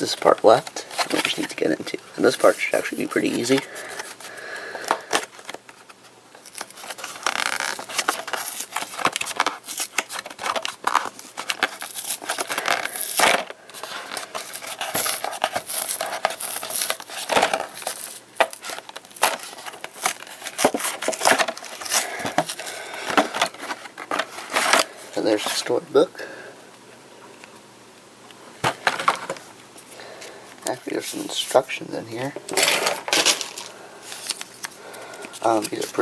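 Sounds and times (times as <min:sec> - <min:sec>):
plastic packaging crinkling: 0:00.0 - 0:25.8, 0:28.6 - 0:36.0.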